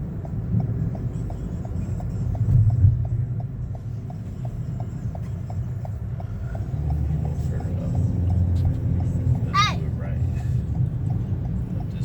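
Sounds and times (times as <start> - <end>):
car cabin road rumble: 0.0 - 12.0
turn signal ticking: 0.0 - 12.0.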